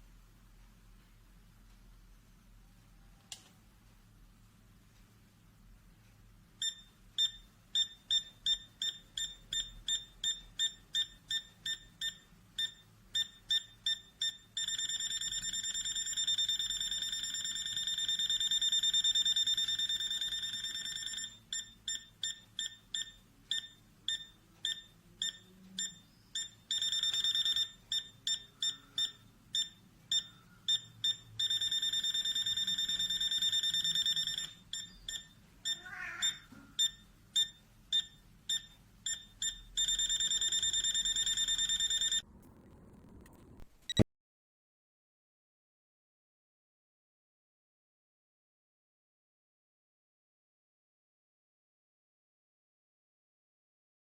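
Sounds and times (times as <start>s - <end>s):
multimeter beeper alarm: 6.6s - 42.2s.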